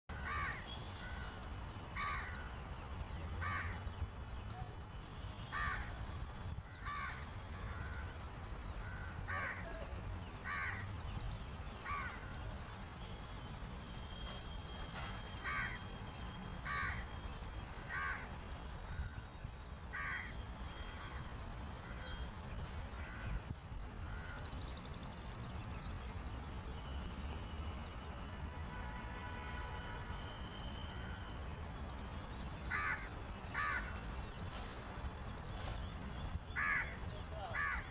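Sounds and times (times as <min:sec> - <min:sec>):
crow cawing: 0:00.1 - 0:01.3, 0:02.0 - 0:02.5, 0:03.4 - 0:03.8, 0:05.5 - 0:06.0, 0:06.7 - 0:08.2, 0:08.8 - 0:09.8, 0:10.4 - 0:10.8, 0:11.8 - 0:12.3, 0:15.4 - 0:15.8, 0:16.6 - 0:17.0, 0:17.9 - 0:18.3, 0:19.9 - 0:20.4, 0:32.7 - 0:34.0, 0:36.6 - 0:37.9.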